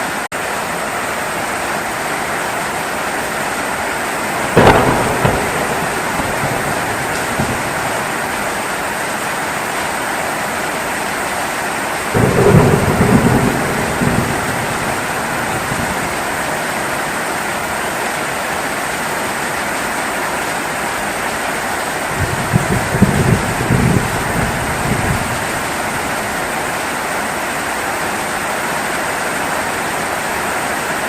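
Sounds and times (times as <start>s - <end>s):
heavy rain: 0.0s - 31.0s
low rumble of thunder: 4.4s - 9.0s, 12.2s - 16.7s, 22.2s - 26.4s.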